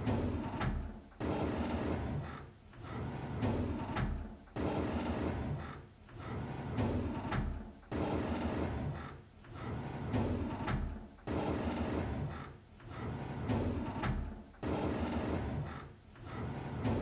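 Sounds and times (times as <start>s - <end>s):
wooden drawer sliding open: 16.3s - 17.0s.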